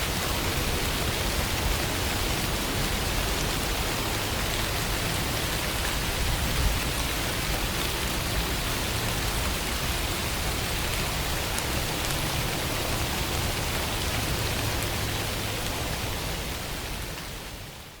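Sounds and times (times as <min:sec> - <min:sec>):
steady rain falling: 0:00.0 - 0:18.0.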